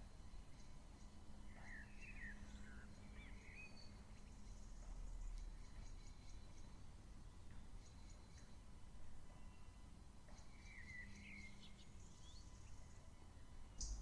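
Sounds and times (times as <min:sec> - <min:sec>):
faint bird chirps: 0:09.3 - 0:14.0.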